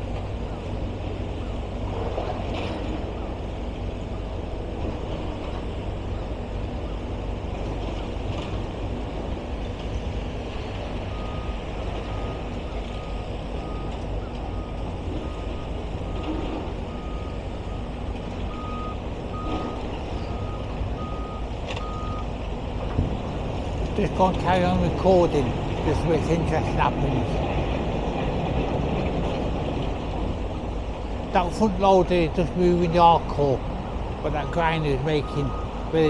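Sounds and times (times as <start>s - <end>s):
low rumble of machinery: 0.0s - 36.0s
reversing alarm beeping: 11.1s - 17.9s, 18.5s - 22.3s, 34.3s - 36.0s.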